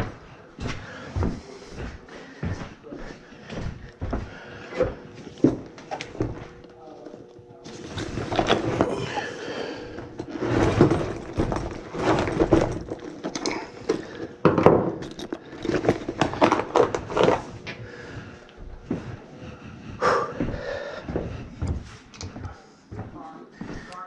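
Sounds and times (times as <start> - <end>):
hands and tools handling noise: 3.5 - 19.2.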